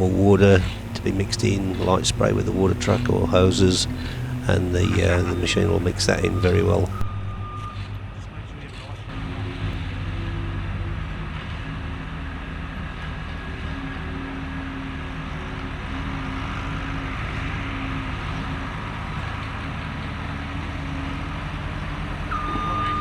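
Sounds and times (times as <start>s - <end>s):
loader diesel engine under load: 0.0s - 8.2s, 15.1s - 23.0s.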